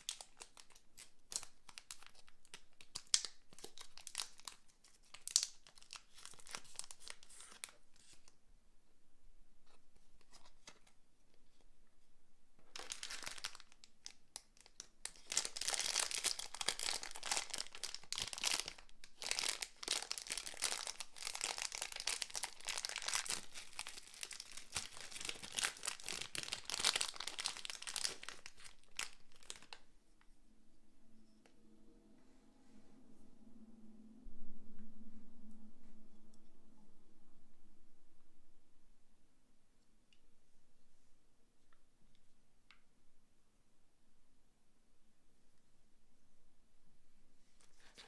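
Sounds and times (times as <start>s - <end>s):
packaging wrapper crinkling: 0.0s - 8.3s, 12.6s - 29.9s.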